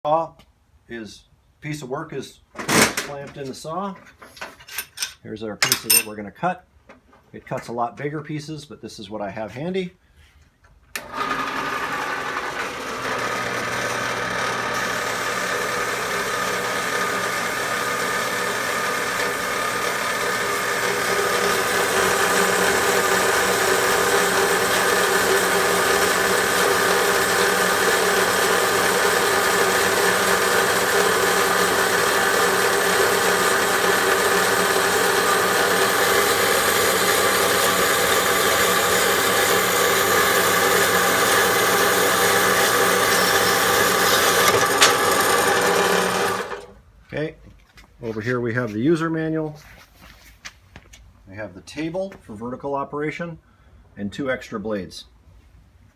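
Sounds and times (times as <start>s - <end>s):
band saw cutting metal: 4.6s - 6.1s, 11.0s - 46.8s.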